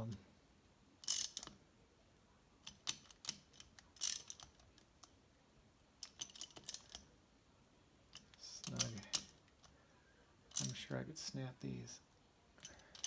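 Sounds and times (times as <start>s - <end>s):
socket ratchet clicking: 1.0s - 1.6s, 2.6s - 4.6s, 12.6s - 13.0s.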